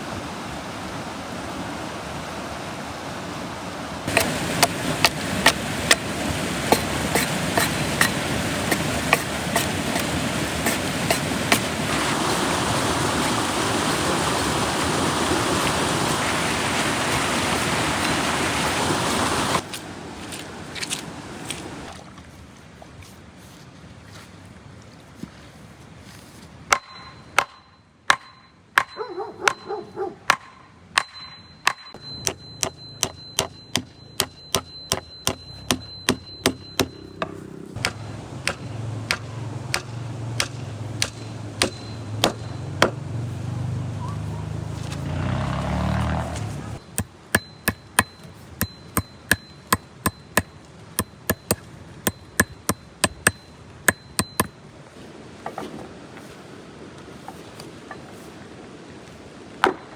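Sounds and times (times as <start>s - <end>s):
hammer striking nails: 4.1s - 6.1s, 6.7s - 11.7s, 26.7s - 29.7s, 30.3s - 43.0s, 46.8s - 54.5s.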